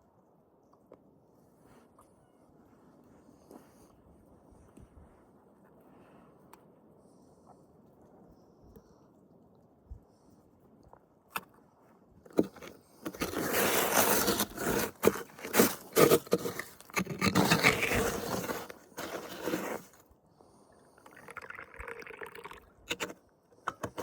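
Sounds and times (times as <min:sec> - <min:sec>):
scraping and rustling: 0:12.3 - 0:20.0.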